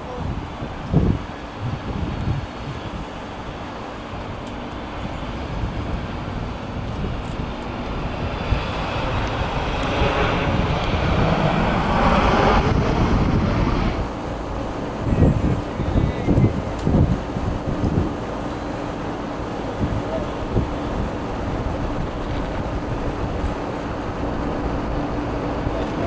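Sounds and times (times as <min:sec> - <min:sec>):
aircraft engines passing overhead: 0:00.0 - 0:26.0
wind buffeting microphone: 0:00.0 - 0:26.0.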